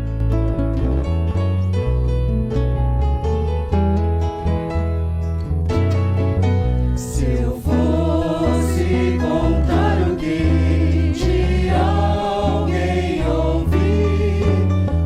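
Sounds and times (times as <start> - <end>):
bass notes: 0.0 - 15.0
instrumental accompaniment: 0.0 - 15.0
voices singing gospel music: 7.0 - 15.0.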